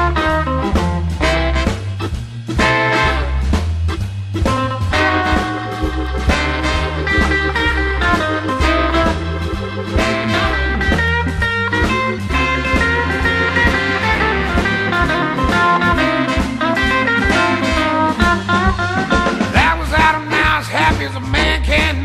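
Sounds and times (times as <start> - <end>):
blues band playing shuffle: 0.0 - 22.0.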